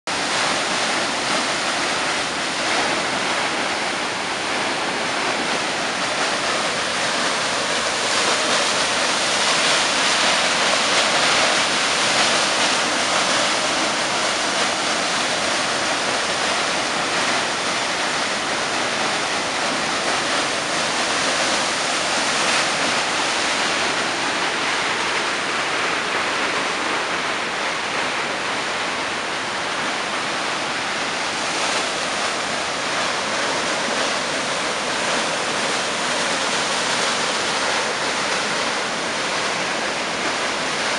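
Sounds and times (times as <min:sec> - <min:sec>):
waterfall rushing: 0:00.1 - 0:40.9.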